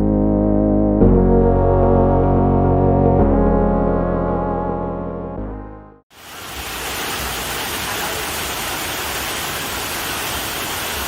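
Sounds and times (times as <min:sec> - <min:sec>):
background music: 0:00.0 - 0:06.0
waterfall rushing: 0:06.1 - 0:11.0.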